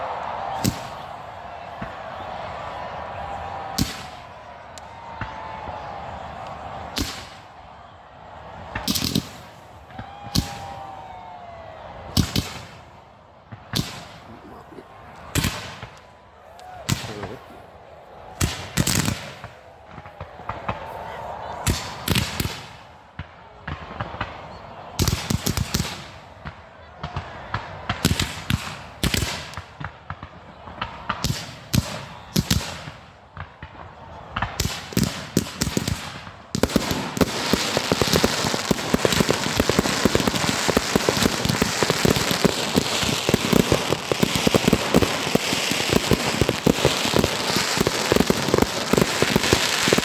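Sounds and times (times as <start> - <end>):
fireworks bangs: 0.0 - 7.7, 8.5 - 11.2, 11.8 - 17.5, 18.3 - 50.0
falling firework whistle: 36.7 - 50.0.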